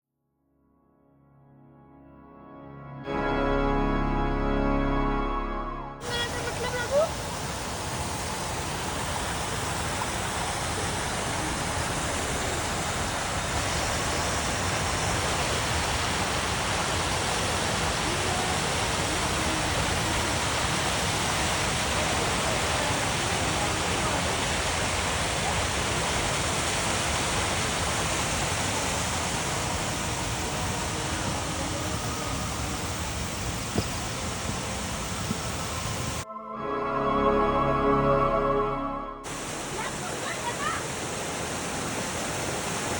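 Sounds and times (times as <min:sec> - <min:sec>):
waterfall rushing: 0:06.0 - 0:36.2, 0:39.2 - 0:42.9.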